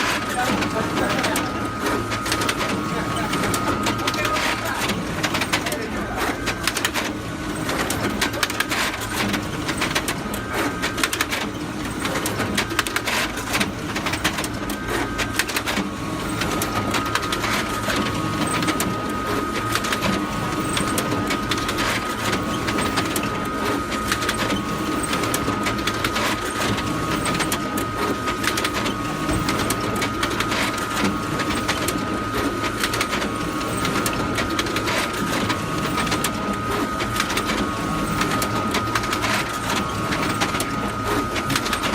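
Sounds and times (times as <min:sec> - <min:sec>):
steady high whine: 0:00.0 - 0:09.0
photocopier running: 0:00.0 - 0:41.9
rapid mechanical clicking: 0:00.0 - 0:41.9.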